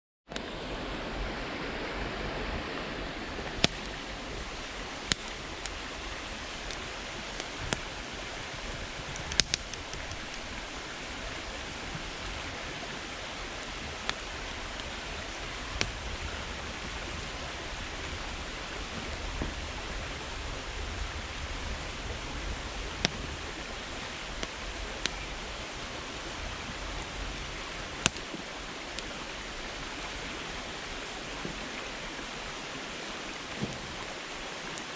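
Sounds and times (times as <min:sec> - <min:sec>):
campfire flame hiss: 0:00.4 - 0:34.9
firewood crackling and popping: 0:03.4 - 0:29.1.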